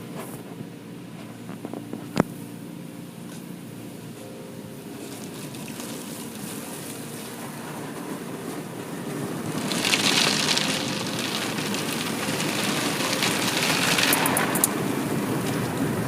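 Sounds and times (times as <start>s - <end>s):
car wash rushing hiss: 5.0s - 16.0s.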